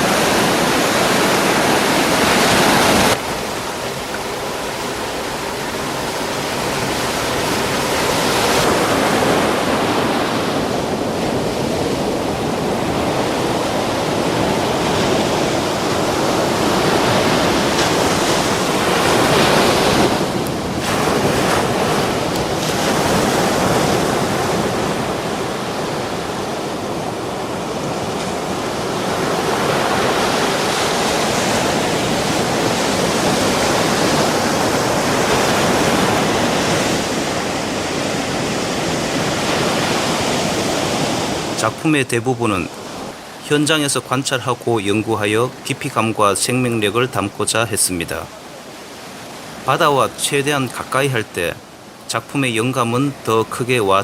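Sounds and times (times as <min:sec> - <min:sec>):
waves breaking and washing in: 0:00.0 - 0:54.0.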